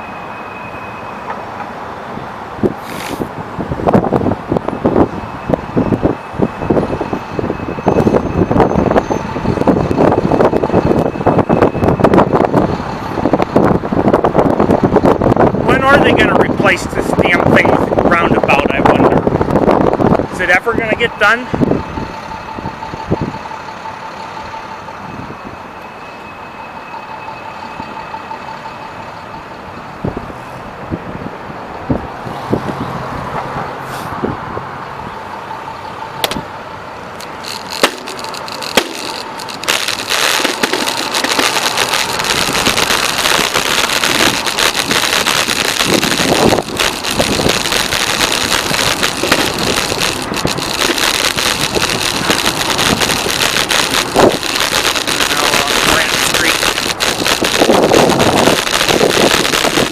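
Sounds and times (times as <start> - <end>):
city street traffic: 0.0 - 59.9
bicycle rattling clicks: 37.2 - 39.7.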